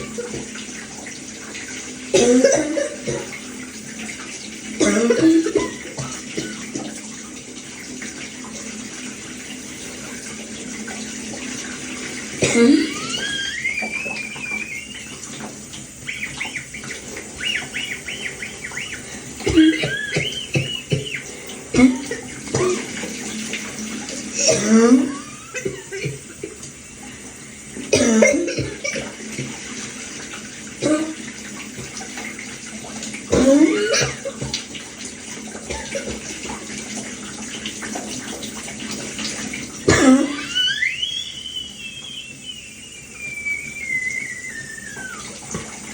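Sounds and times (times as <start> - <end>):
shower water running: 0.0 - 45.9
person coughing: 2.1 - 3.3, 4.8 - 5.9, 12.4 - 13.0, 24.4 - 26.2, 27.9 - 29.2, 39.9 - 40.4
wheezy whistling breathing: 12.9 - 21.6, 40.4 - 45.4.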